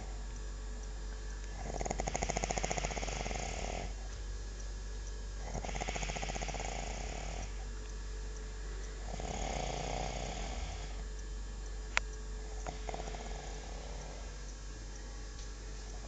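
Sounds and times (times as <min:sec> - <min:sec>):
man snoring: 0:01.6 - 0:04.0, 0:05.4 - 0:07.6, 0:09.0 - 0:11.0, 0:12.6 - 0:14.4.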